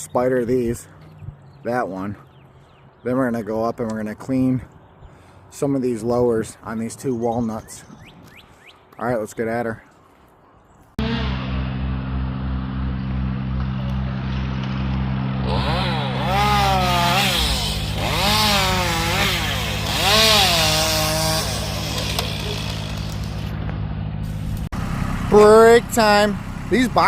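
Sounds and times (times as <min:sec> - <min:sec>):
chainsaw revving while cutting: 0:15.4 - 0:23.4.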